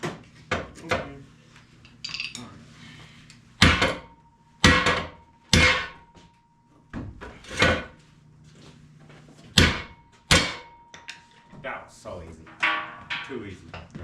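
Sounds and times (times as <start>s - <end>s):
hammer striking metal: 3.6s - 6.2s, 9.6s - 11.2s, 12.5s - 13.5s
faint metallic ringing: 12.5s - 13.6s.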